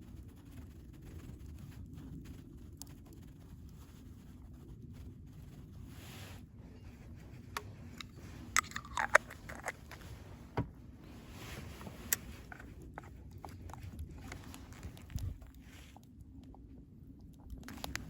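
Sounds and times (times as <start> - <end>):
cooking gear clicks and knocks: 7.6 - 10.1.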